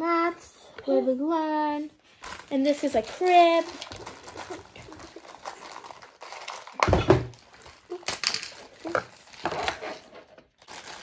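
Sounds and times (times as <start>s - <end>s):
toy pieces rustling and knocking: 2.2s - 11.0s.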